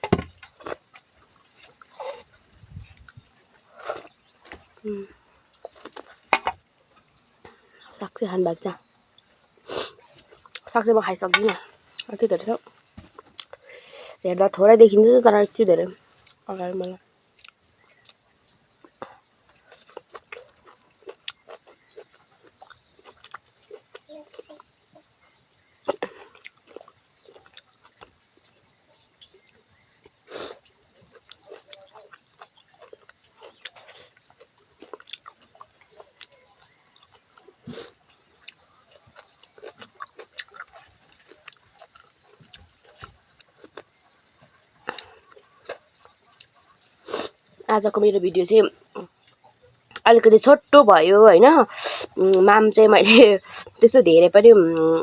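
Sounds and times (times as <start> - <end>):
wet chewing and lip-smacking: 0.4 - 6.3, 11.4 - 13.7, 16.0 - 47.6.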